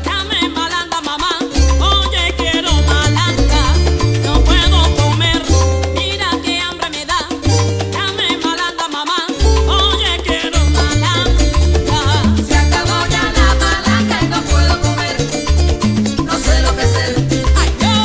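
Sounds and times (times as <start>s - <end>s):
woman singing: 0.0s - 7.4s, 8.0s - 15.6s, 16.2s - 18.0s
congas: 0.0s - 18.0s
tres guitar: 1.5s - 6.7s, 9.4s - 18.0s
plucked bass notes: 1.6s - 8.4s, 9.4s - 18.0s.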